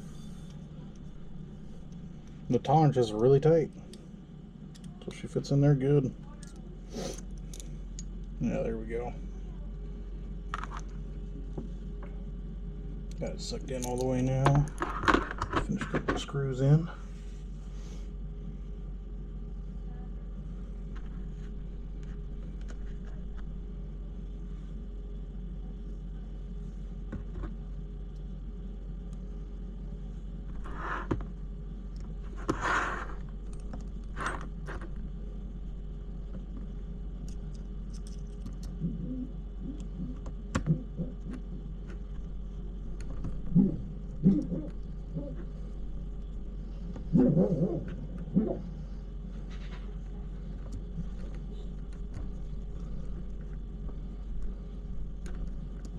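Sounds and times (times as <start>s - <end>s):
steady background hum: 0.0s - 55.9s
small tools clicking and tapping: 37.2s - 38.8s.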